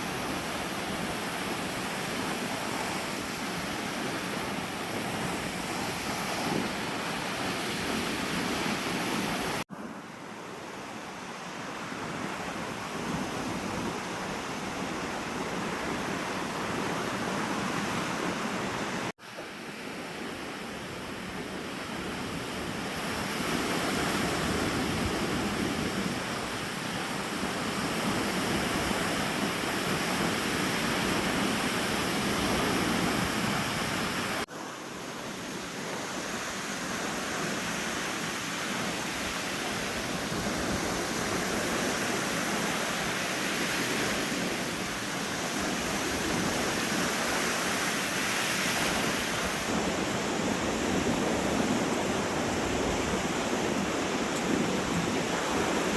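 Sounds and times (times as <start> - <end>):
waves washing onto beach: 0.0 - 55.9
wind buffeting microphone: 20.8 - 55.9.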